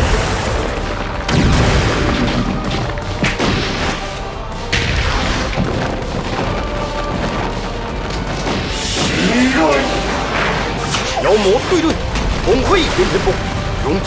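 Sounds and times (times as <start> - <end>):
booms and impact effects: 0.0 - 14.0
dramatic background music: 0.0 - 14.0.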